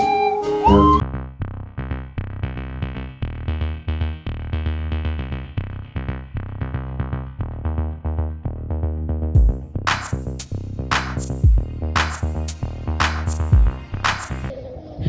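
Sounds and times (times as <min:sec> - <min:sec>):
synthesizer bass line: 0:00.6 - 0:14.5
drum machine beat: 0:09.4 - 0:14.5.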